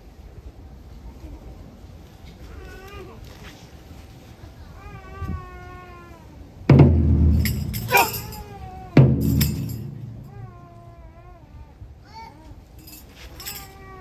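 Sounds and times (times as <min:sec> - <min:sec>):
gong or cymbal crashes: 0:06.7 - 0:10.6
big drum hits: 0:06.7 - 0:10.8.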